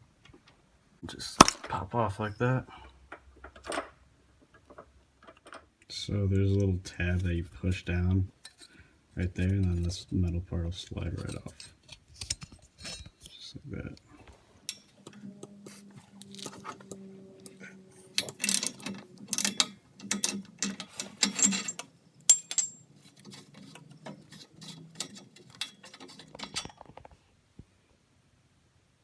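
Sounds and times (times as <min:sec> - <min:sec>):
faint steady hum: 0:00.0 - 0:29.0
small parts clicking and rattling: 0:11.1 - 0:13.4, 0:14.6 - 0:27.2.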